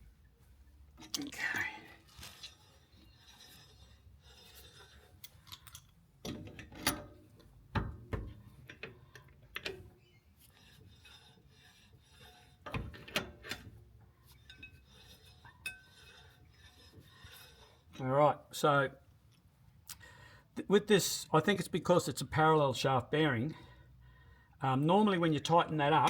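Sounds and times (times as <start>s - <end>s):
faint mechanical turning: 0.4s - 18.0s
spanner clinking on metal nut: 4.6s - 7.2s.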